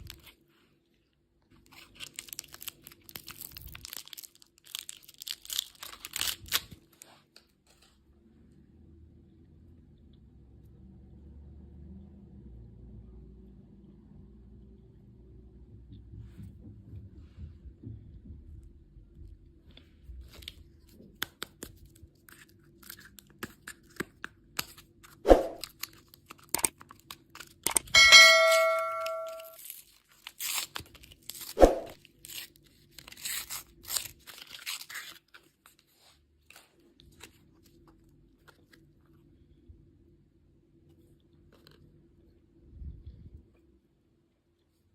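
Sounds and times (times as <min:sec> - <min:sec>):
candy wrappers rustling: 0:01.5 - 0:07.9, 0:29.6 - 0:39.2
ringing ding: 0:28.0 - 0:29.6.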